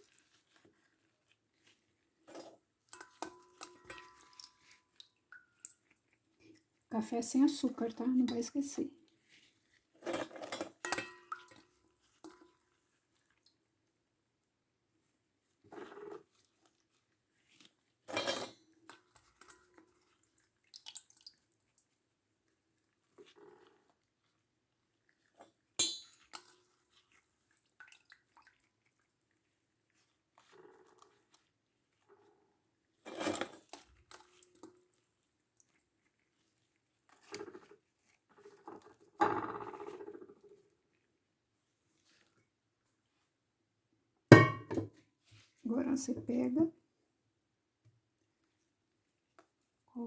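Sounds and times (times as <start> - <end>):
small wet sounds: 0.0 - 44.3, 45.0 - 50.0
dishes and utensils clinking: 44.3 - 44.9.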